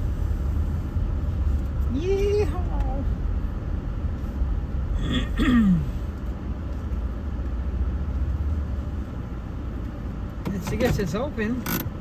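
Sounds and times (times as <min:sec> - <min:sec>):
car engine and road noise: 0:00.0 - 0:12.0.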